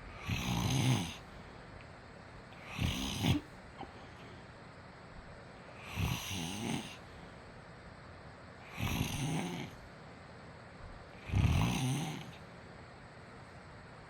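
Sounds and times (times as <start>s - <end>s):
man snoring: 0.1s - 1.3s, 2.6s - 3.5s, 5.8s - 7.0s, 8.6s - 9.8s, 11.2s - 12.4s.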